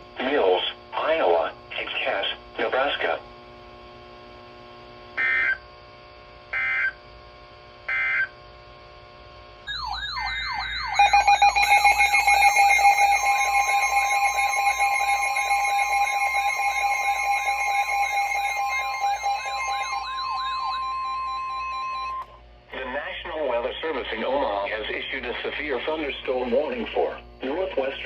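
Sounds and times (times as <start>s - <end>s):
wailing alarm tones: 5.2s - 5.6s, 9.7s - 22.4s
data bursts: 9.7s - 22.4s.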